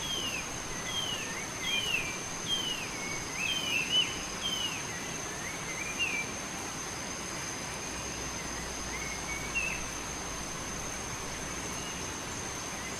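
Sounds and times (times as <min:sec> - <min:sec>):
songbird chirping: 0:00.0 - 0:06.3
outdoor hiss: 0:00.0 - 0:12.9.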